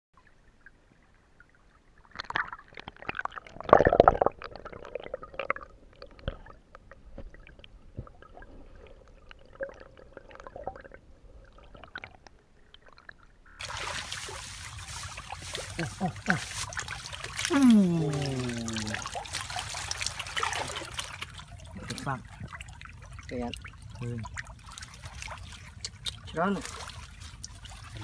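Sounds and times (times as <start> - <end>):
splashing in shallow water: 13.5 - 28.0.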